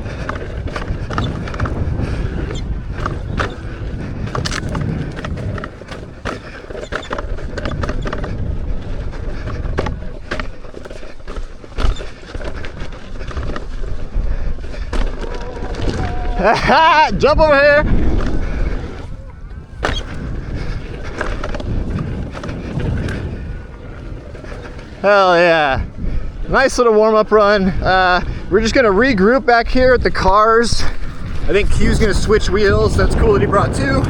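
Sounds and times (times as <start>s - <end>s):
wheel knocking over bumps: 0.0s - 13.8s, 18.0s - 25.6s
wind and tyre noise: 0.0s - 34.0s.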